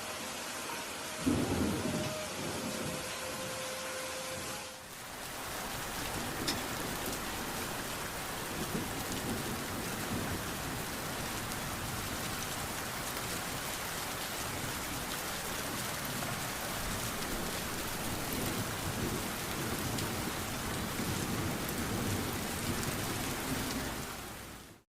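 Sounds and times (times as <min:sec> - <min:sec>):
steady rain falling: 0:00.0 - 0:24.8
raindrop clicks: 0:06.0 - 0:07.4.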